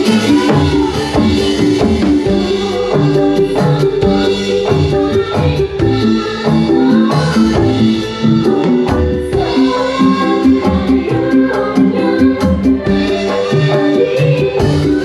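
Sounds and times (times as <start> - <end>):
hand percussion beat: 0.0 - 15.0.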